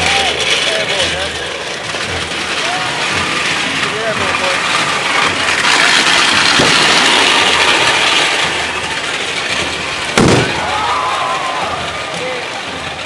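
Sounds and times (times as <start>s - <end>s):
street crowd noise: 0.0s - 13.0s
firework bang: 10.1s - 11.4s.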